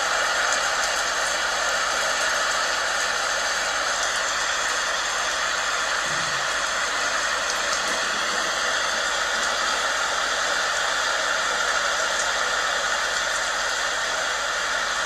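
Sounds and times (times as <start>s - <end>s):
heavy rain: 0.0s - 15.0s.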